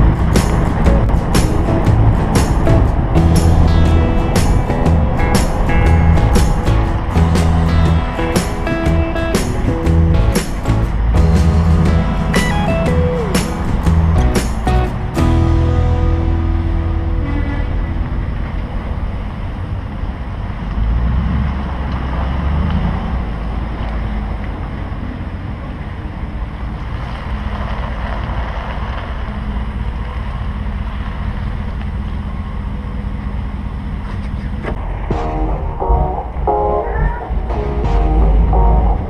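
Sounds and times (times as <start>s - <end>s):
wind noise: 0.0s - 20.2s
vehicle road rumble: 0.0s - 39.0s.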